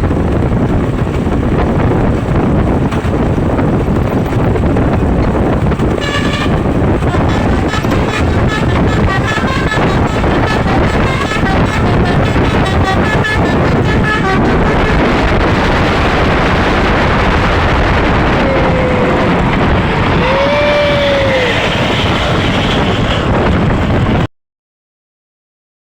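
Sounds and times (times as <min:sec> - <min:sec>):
loud road noise: 0:00.0 - 0:24.3
bus horn playing short notes: 0:06.0 - 0:16.2.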